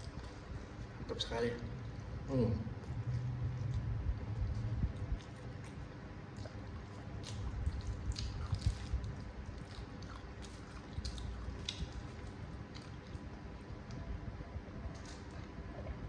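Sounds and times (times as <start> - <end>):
person chewing noodles: 1.8 - 14.0.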